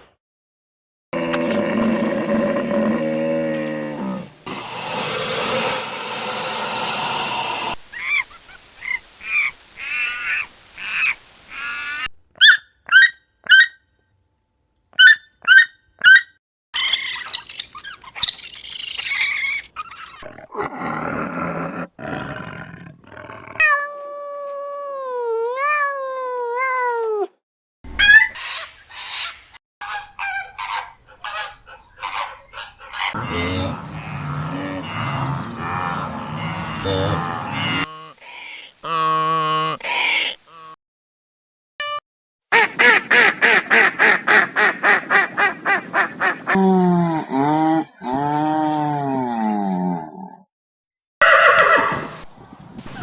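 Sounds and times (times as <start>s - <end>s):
high sharp animal chirps: 15.0s - 20.3s
long wavering animal call: 33.1s - 38.0s.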